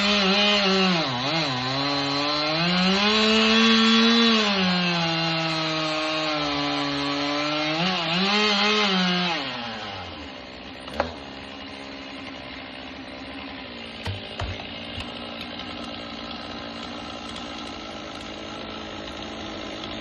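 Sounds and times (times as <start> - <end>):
chainsaw cutting wood: 0.0 - 20.0
thumps: 14.0 - 15.1.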